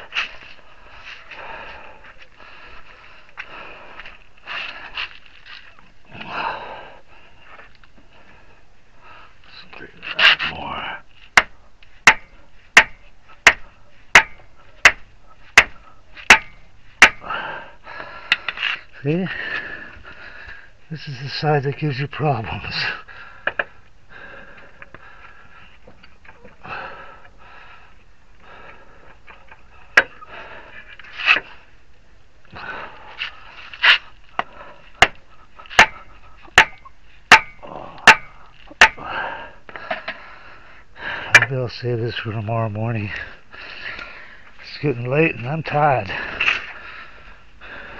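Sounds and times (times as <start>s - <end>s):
hammer striking metal axle: 11.4s - 15.0s, 15.6s - 17.2s, 35.0s - 39.0s, 41.3s - 41.5s.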